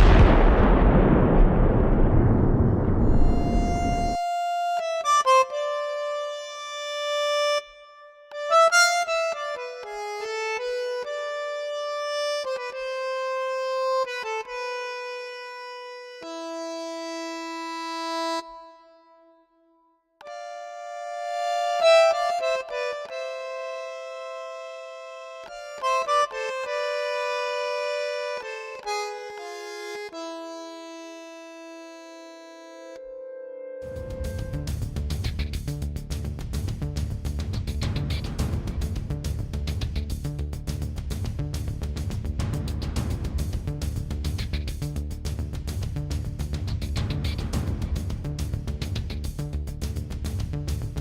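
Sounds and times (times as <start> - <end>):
reedy electronic melody: 2.8 - 19.6, 20.2 - 34.9.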